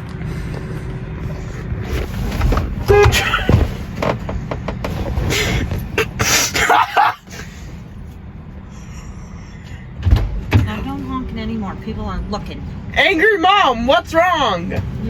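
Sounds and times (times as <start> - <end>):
car horn toot: 2.8 - 3.7.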